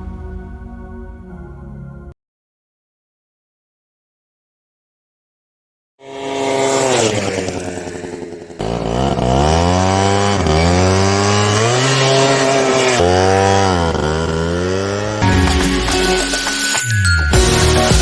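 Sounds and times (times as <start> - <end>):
scooter engine revving: 6.0 - 16.7.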